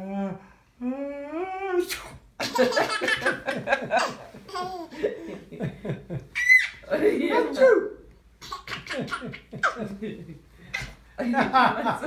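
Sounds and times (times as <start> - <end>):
laughter: 2.4 - 6.3, 11.2 - 12.0.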